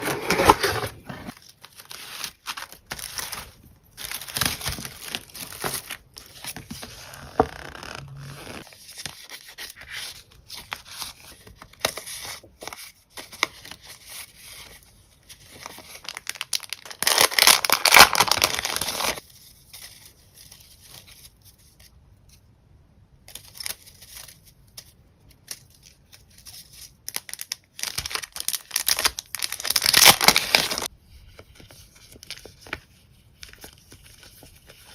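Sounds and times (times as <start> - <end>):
packaging tearing and crinkling: 0.0 - 6.2, 15.6 - 19.2, 27.1 - 30.9.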